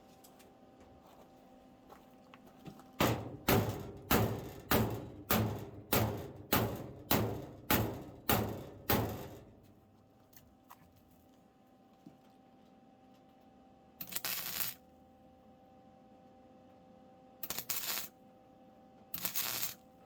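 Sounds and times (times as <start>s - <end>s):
hammer blows on sheet metal: 3.0s - 9.7s.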